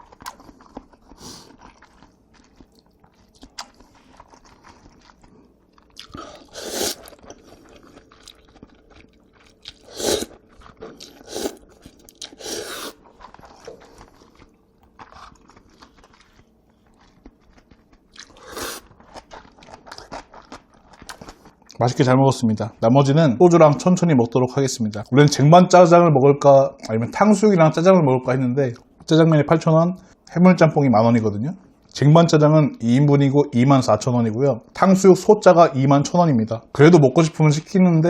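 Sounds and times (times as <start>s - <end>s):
chewing and biting: 0.0s - 21.6s
loud mouth noises: 6.1s - 7.1s, 9.8s - 10.4s, 11.0s - 13.0s.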